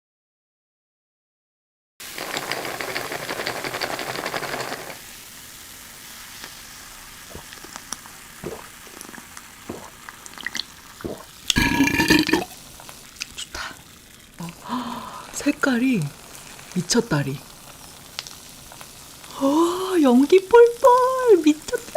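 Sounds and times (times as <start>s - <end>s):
food sizzling in a hot pan: 2.0s - 21.9s
loud belch: 8.4s - 12.6s
scattered clicks and taps: 9.7s - 10.0s.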